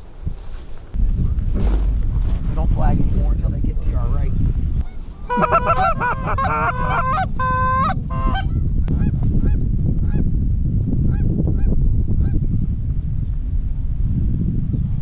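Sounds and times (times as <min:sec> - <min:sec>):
wind rumble on microphone: 0:00.0 - 0:15.0
goose honking: 0:04.8 - 0:09.1.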